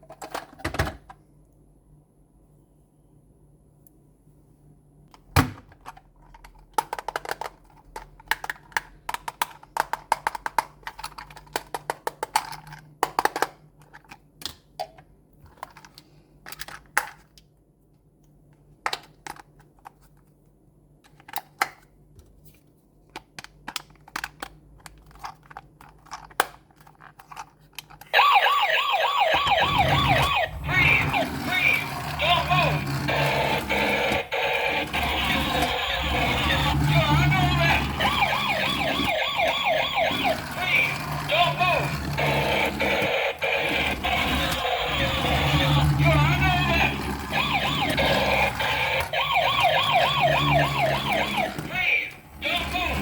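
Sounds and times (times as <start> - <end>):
toy electronic siren warbling: 28.2 - 53.0.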